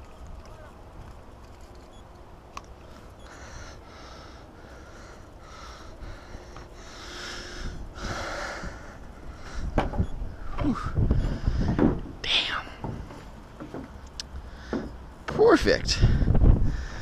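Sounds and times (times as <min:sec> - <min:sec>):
person breathing in short breaths: 0:03.0 - 0:09.8, 0:16.0 - 0:17.0
wind rumble on microphone: 0:07.5 - 0:13.1, 0:15.9 - 0:17.0.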